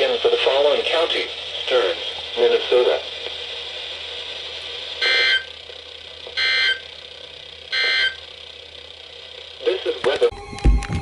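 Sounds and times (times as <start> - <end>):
faint radio hiss: 0.0 - 6.0, 9.4 - 10.3.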